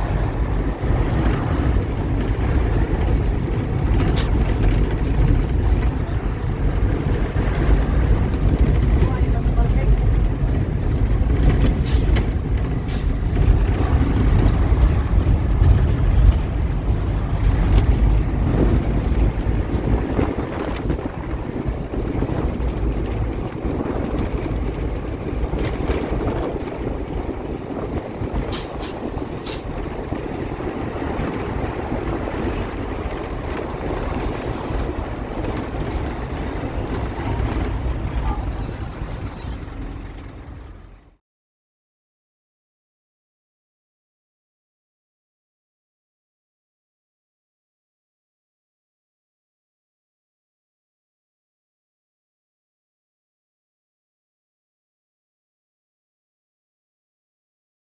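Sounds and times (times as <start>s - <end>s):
heavy truck engine rumbling: 0.0s - 41.2s.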